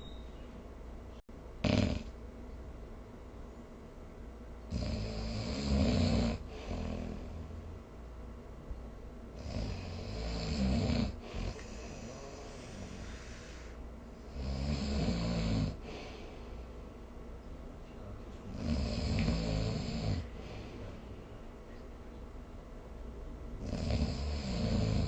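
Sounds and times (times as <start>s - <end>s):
loud rasping snores: 1.6s - 2.1s, 4.7s - 7.5s, 9.4s - 13.6s, 14.3s - 16.0s, 18.5s - 20.4s, 23.6s - 25.0s
quiet breathing: 6.4s - 7.8s, 11.1s - 14.5s, 15.7s - 21.8s.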